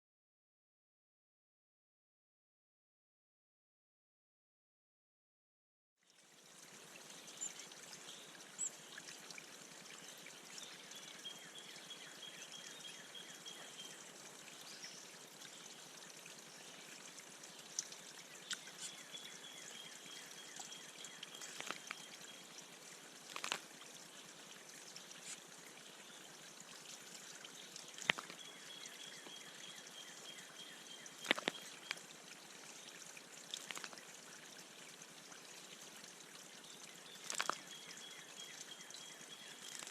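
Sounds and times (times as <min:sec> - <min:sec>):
water trickling: 0:06.0 - 0:39.9
taps and splashes: 0:17.6 - 0:19.0, 0:20.4 - 0:22.3, 0:23.2 - 0:24.0, 0:27.8 - 0:29.4, 0:31.1 - 0:32.1, 0:33.4 - 0:34.2, 0:37.1 - 0:37.8.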